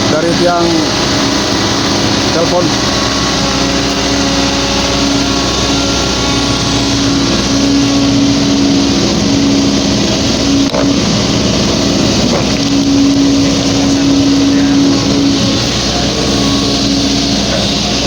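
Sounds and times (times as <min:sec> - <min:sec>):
excavator diesel engine droning: 0:00.0 - 0:18.0.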